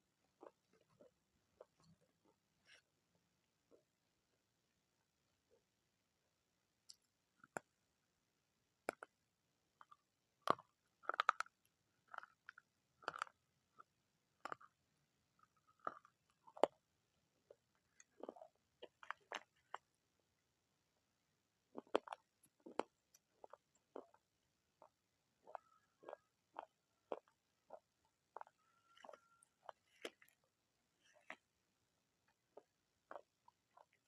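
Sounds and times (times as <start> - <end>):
person chewing crunchy food: 9.8 - 14.8, 15.4 - 16.8, 17.5 - 19.9, 21.7 - 30.4, 31.0 - 31.5, 32.2 - 34.0.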